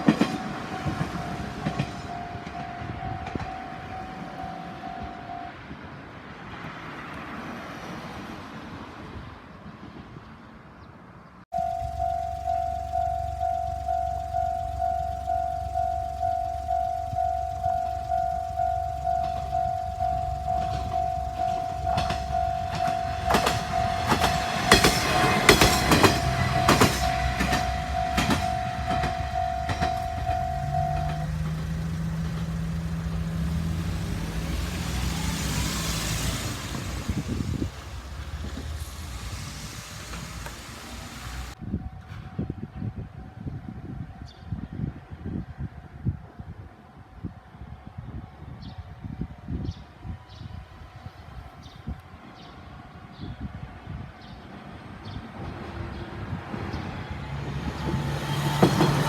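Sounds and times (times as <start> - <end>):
wheels clacking over rail joints: 0.0 - 4.7, 11.6 - 41.6, 57.5 - 59.0
railcar engine hum: 0.0 - 10.2, 11.5 - 59.0
level crossing bell ringing: 0.1 - 5.5, 11.5 - 36.7.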